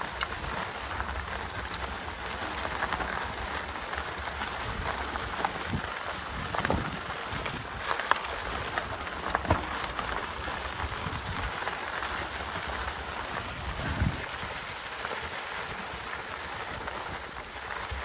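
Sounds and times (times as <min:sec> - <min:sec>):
bike tyres on gravel: 0:00.0 - 0:18.0
bike knocks: 0:08.8 - 0:10.7.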